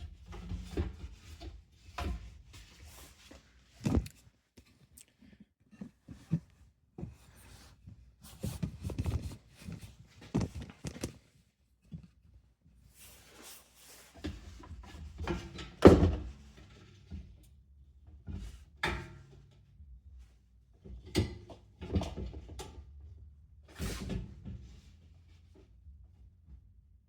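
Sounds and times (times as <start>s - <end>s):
fan parts knocking and rattling: 8.4s - 11.2s.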